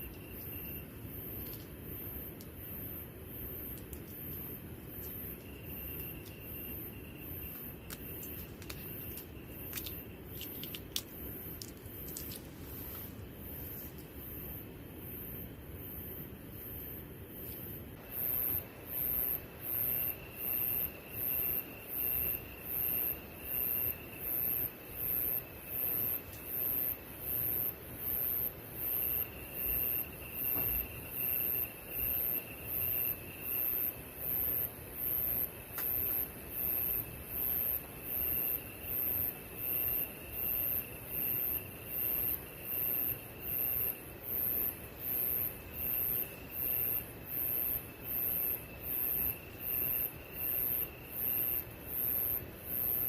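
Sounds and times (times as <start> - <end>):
insect high trill: 0.0 - 12.5
faint steady whine: 0.0 - 53.0
insect chirping: 0.0 - 53.0.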